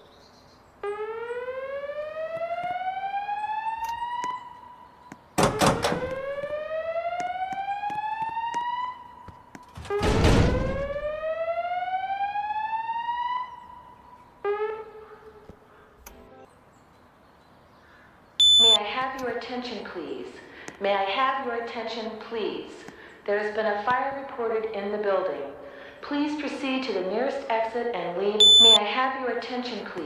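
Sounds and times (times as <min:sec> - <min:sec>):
fire alarm whoop tone: 0:00.8 - 0:14.9, 0:18.4 - 0:18.8, 0:28.4 - 0:28.8.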